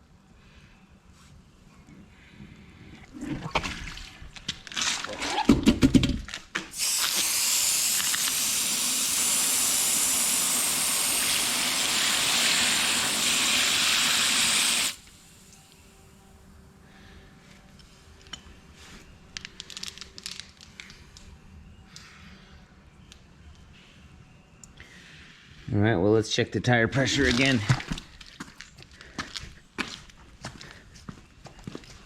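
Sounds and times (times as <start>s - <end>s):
water spray hissing: 6.7s - 15.7s.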